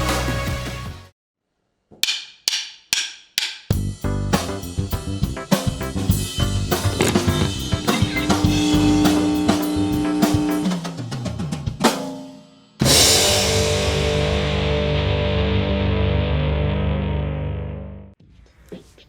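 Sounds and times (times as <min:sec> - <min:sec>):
upbeat rock music: 0:00.0 - 0:01.1, 0:03.7 - 0:10.8, 0:12.8 - 0:18.0
held guitar chord ringing: 0:07.0 - 0:10.7, 0:13.2 - 0:17.9.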